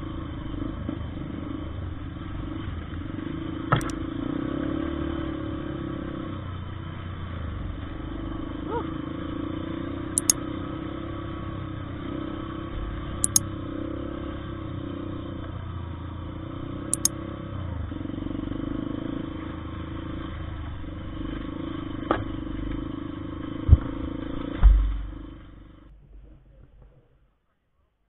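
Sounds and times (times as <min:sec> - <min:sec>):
short clicks: 0:13.2 - 0:13.4.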